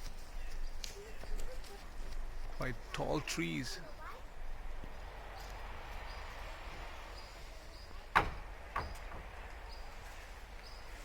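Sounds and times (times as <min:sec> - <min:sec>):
sharp knocks: 0:08.1 - 0:09.4.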